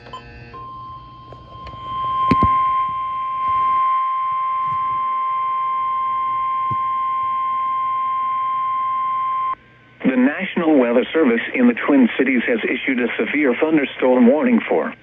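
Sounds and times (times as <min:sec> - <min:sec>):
steady warning alarm tone: 0:00.0 - 0:09.6
radio static clicks: 0:04.6 - 0:05.1, 0:06.3 - 0:07.4.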